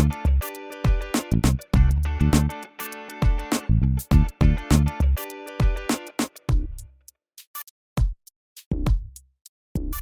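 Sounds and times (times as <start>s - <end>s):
sharp drum hits: 0.0s - 2.5s, 3.2s - 6.8s
background music: 0.0s - 6.8s.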